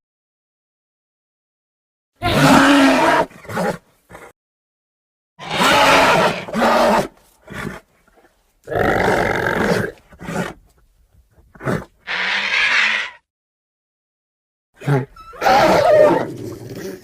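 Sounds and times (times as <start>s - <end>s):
creature roars: 2.2s - 3.3s, 5.4s - 7.1s, 12.1s - 13.2s.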